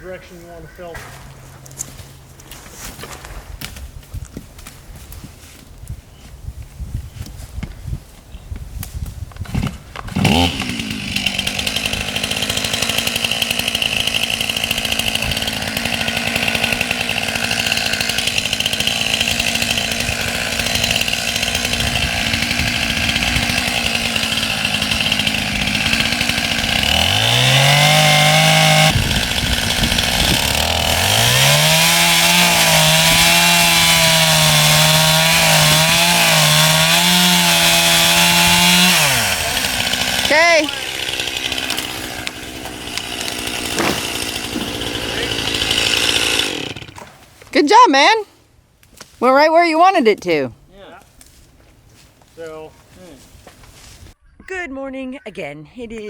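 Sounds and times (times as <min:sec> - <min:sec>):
chainsaw cutting: 0:00.0 - 0:04.0, 0:09.3 - 0:48.3, 0:49.2 - 0:50.5.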